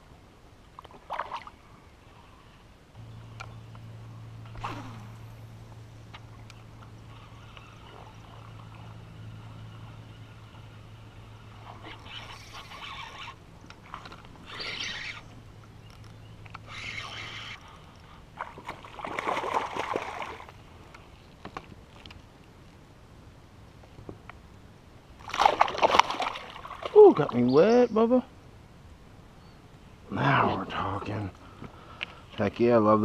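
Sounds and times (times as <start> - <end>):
water splashing around kayak: 0.8 - 1.6, 17.7 - 20.7, 25.2 - 27.4
steady low hum: 1.4 - 23.8.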